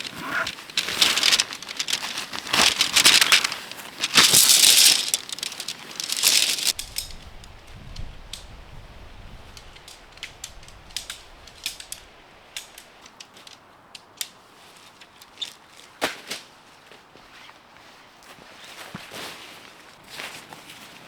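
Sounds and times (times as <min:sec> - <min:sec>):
camping gear clicks and snaps: 0:00.0 - 0:07.2, 0:09.6 - 0:16.5.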